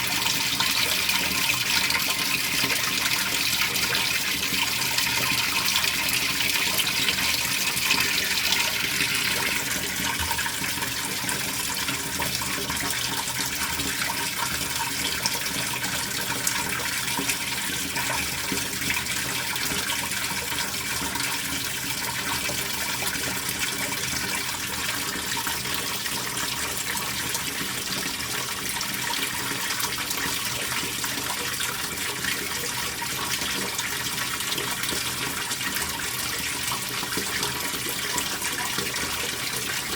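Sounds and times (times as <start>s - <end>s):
water rushing in washing machine: 0.0s - 39.9s.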